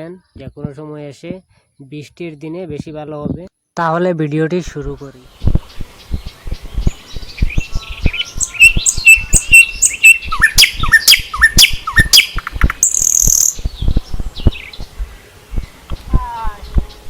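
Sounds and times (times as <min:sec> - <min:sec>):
songbirds chirping: 0:00.0 - 0:17.0
low thumps: 0:04.8 - 0:09.0, 0:13.5 - 0:17.0.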